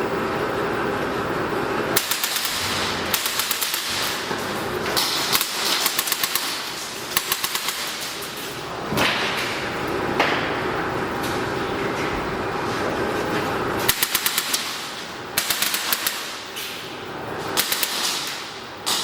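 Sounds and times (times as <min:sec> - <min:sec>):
airsoft guns firing bursts: 0:02.0 - 0:04.2, 0:05.0 - 0:08.1, 0:13.9 - 0:14.8, 0:15.4 - 0:16.4, 0:17.6 - 0:19.0
loud cracks: 0:02.0 - 0:04.3, 0:04.9 - 0:08.3, 0:13.9 - 0:16.4, 0:17.6 - 0:19.0.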